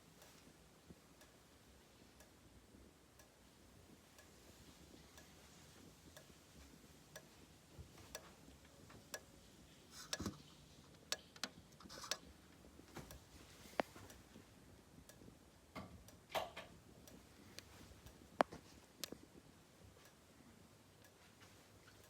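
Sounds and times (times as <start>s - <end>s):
faint strobe tick: 0.2s - 9.3s.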